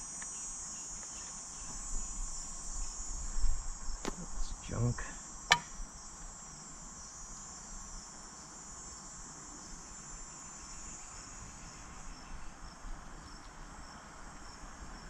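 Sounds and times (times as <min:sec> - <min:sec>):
insects chirring: 0:00.0 - 0:15.0
sharp click: 0:05.5 - 0:05.7.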